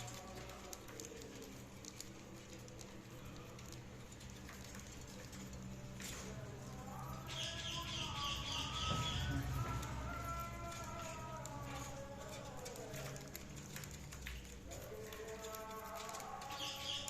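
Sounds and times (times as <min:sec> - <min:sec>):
budgerigars chirping and warbling: 0:07.3 - 0:09.6.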